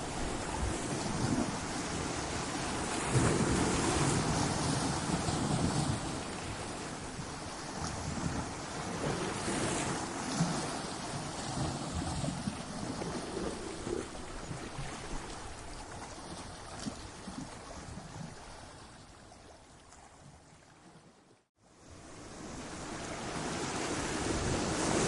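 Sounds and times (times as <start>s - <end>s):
surf washing over rocks: 0.0s - 15.8s.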